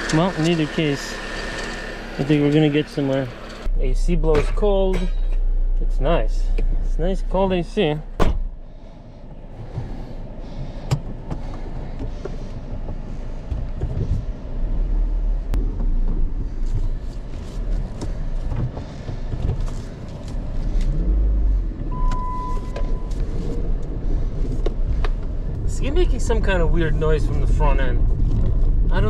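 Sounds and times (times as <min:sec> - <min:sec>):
car engine and road rumble: 0:00.0 - 0:29.0
short steady beep: 0:21.9 - 0:23.2.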